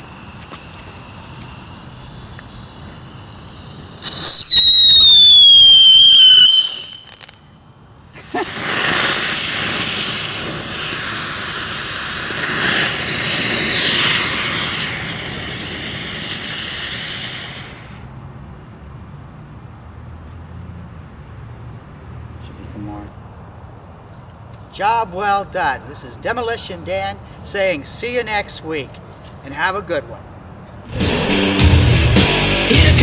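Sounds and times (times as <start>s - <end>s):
fireworks bursting: 0.0s - 18.1s
firework whistle falling in pitch: 0.6s - 7.4s.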